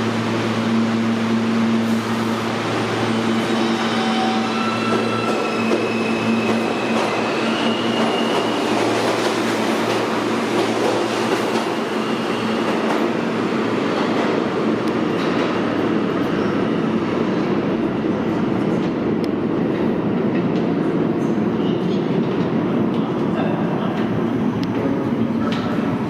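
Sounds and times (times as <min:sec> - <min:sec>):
train wheels rumbling on rails: 0:00.0 - 0:26.0.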